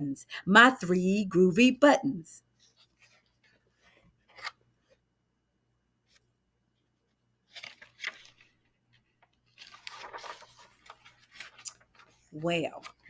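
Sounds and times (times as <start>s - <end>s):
paper pages rustling: 2.6s - 5.0s, 7.5s - 13.0s.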